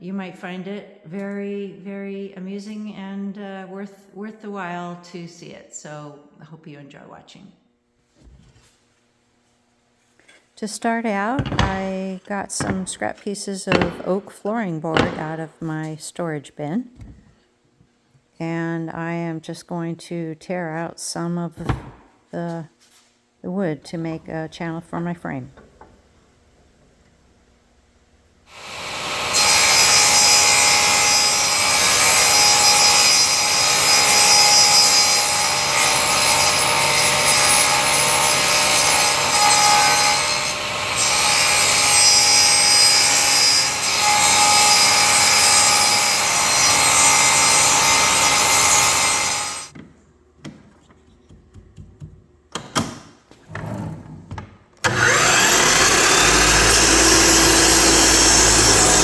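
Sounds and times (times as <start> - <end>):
knocks: 11.4 - 12.0, 12.6 - 13.1, 13.7 - 14.3, 14.9 - 15.4
power tool cutting wood: 11.4 - 12.0, 13.7 - 14.2, 28.5 - 49.7, 54.8 - 59.0.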